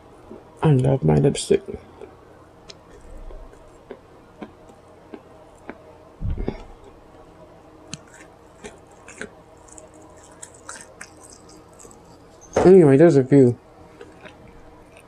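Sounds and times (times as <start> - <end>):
wet mouth eating sounds: 2.8 - 7.0, 7.9 - 12.5, 14.0 - 15.0
low thump: 6.2 - 6.6.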